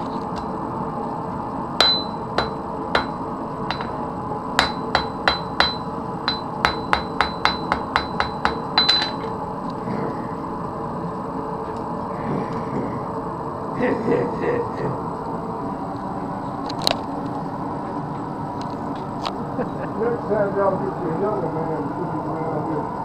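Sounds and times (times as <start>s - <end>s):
forge hum: 0.0s - 23.0s
hammer striking metal on anvil: 1.8s - 4.0s, 4.6s - 9.3s.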